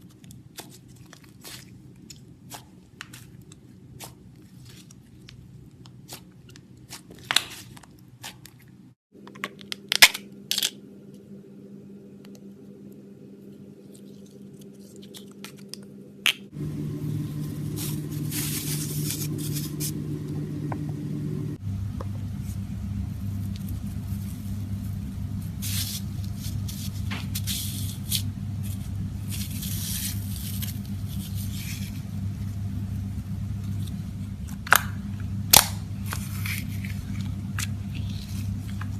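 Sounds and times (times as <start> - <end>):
slime crackling and squishing: 0.0 - 8.9, 22.3 - 38.9
steady low hum: 0.0 - 9.0, 9.8 - 38.9.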